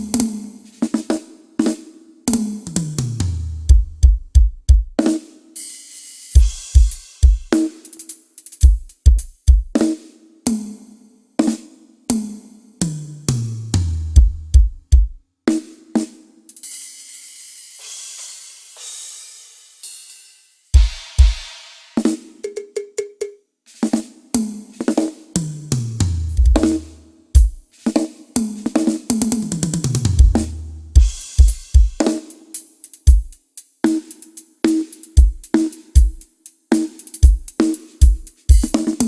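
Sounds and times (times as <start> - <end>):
drum hits: 3.7 - 5.0, 6.4 - 7.5, 14.2 - 15.2, 20.8 - 22.6, 26.2 - 27.6, 29.3 - 32.1
kick drum hits: 3.7 - 5.0, 14.2 - 15.2, 20.8 - 21.4, 26.4 - 26.7
cymbal crashes: 5.7 - 7.5, 16.6 - 20.1, 20.8 - 22.0, 31.0 - 32.1.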